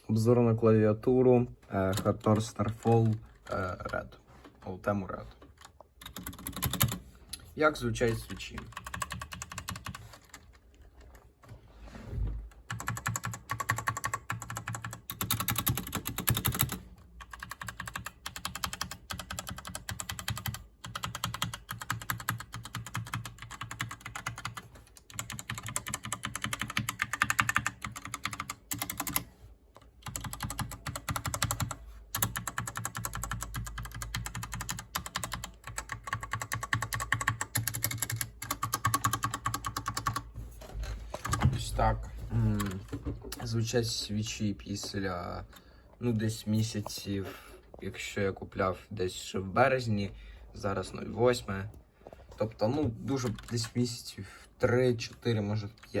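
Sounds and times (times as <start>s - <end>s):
mechanical keyboard typing: 5.5s - 7.0s, 8.0s - 11.1s, 12.6s - 40.3s, 53.1s - 53.9s.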